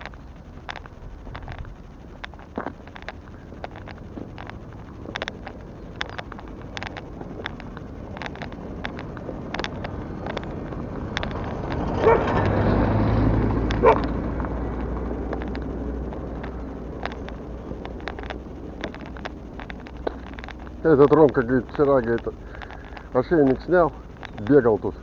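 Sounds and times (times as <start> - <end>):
scattered clicks: 0.0 - 25.0
vehicle driving past: 10.0 - 17.8
dog barking: 12.0 - 12.3, 13.8 - 14.1.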